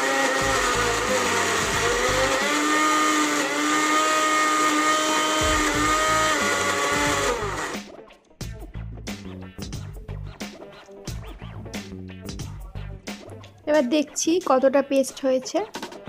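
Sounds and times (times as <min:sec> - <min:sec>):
mixer grinder motor whining: 0:00.0 - 0:07.8.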